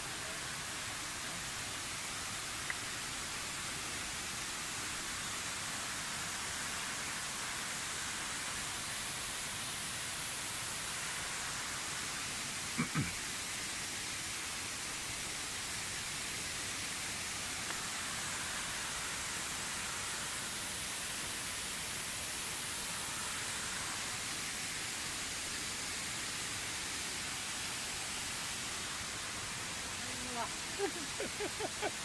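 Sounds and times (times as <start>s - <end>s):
waterfall rushing: 16.4s - 32.0s.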